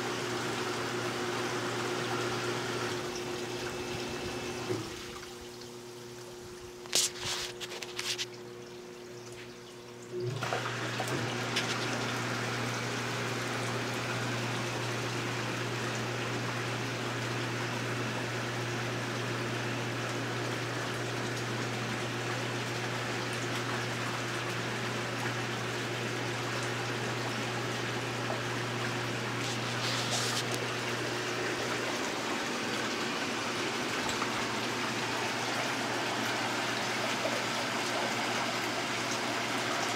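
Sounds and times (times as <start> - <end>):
pump humming: 0.0 - 39.9
water rushing and splashing: 10.2 - 15.0, 27.5 - 39.9.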